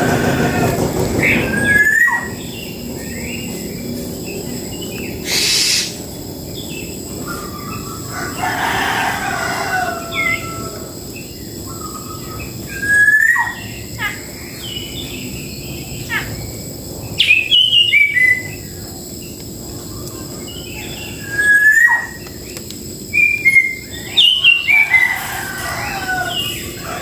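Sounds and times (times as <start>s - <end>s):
birds whistling: 0.0s - 18.9s, 20.3s - 27.0s.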